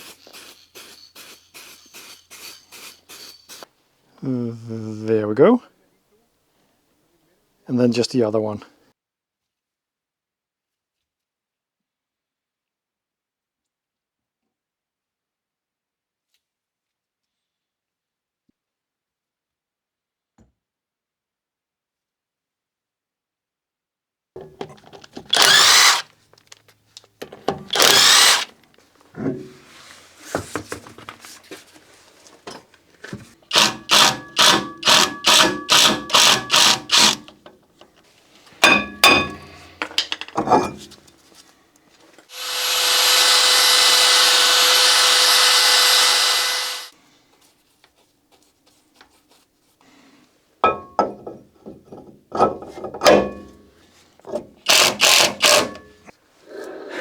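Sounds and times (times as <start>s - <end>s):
power drill spinning: 0.0s - 3.7s, 24.4s - 26.2s, 27.5s - 28.6s, 33.5s - 37.4s, 42.3s - 47.0s, 54.7s - 56.0s
knocks of tools and parts: 24.4s - 25.8s, 27.2s - 28.1s, 32.4s - 38.0s, 38.6s - 41.2s, 50.6s - 56.0s.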